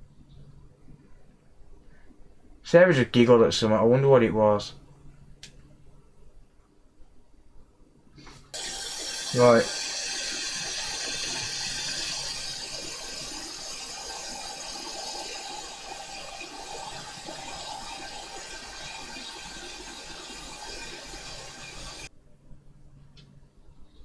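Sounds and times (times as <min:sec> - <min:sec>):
hot air blower hissing: 0:08.3 - 0:22.1.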